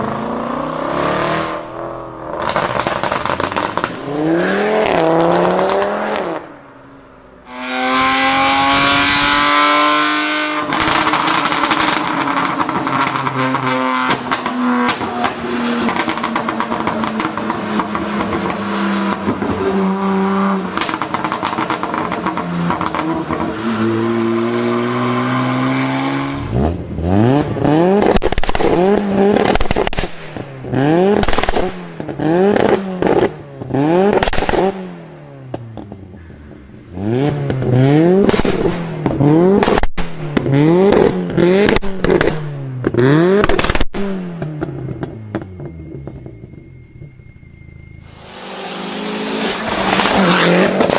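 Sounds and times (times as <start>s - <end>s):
car engines revving: 0.0s - 50.9s
exhaust pops and crackles: 2.4s - 4.0s, 10.6s - 19.6s, 20.7s - 23.4s, 27.9s - 34.8s, 35.5s - 36.3s, 37.2s - 46.4s.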